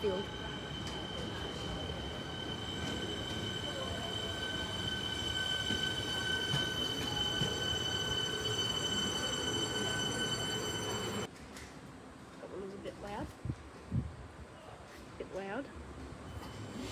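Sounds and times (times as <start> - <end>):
train rumble: 0.0 - 11.3
train wheels squealing on rail: 0.0 - 11.3, 16.2 - 16.9.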